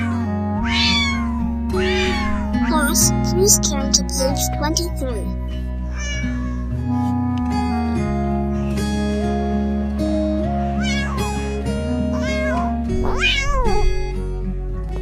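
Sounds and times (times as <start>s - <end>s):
cat meowing: 0.0s - 3.3s, 5.9s - 6.7s, 10.8s - 11.3s, 12.1s - 14.1s
background music melody: 0.0s - 15.0s.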